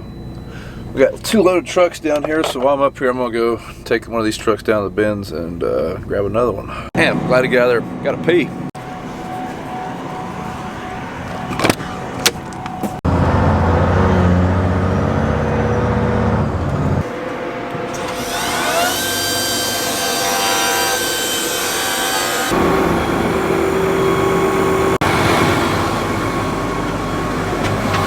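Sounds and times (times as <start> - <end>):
loud low engine running: 7.0 - 18.2, 22.5 - 28.0
truck engine whining pulling away: 8.8 - 19.7, 22.0 - 28.0.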